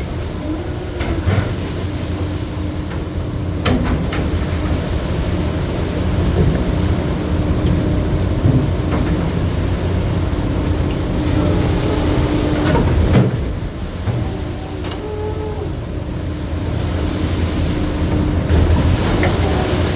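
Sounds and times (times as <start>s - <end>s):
boat engine rumble: 0.0s - 19.9s
deck machinery hum: 0.0s - 19.9s.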